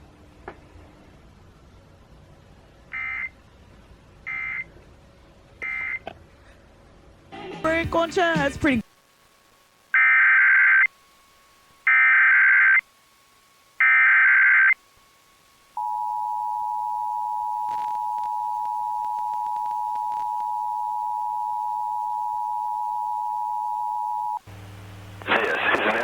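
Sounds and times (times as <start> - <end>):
faint hum: 0.0 - 26.0
screeching digital data tones: 11.8 - 12.8, 13.8 - 14.8.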